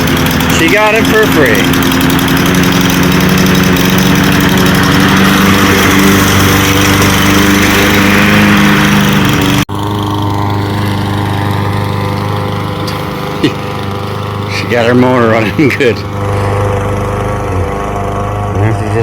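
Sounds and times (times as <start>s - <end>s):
lawn mower engine running: 0.0s - 19.0s.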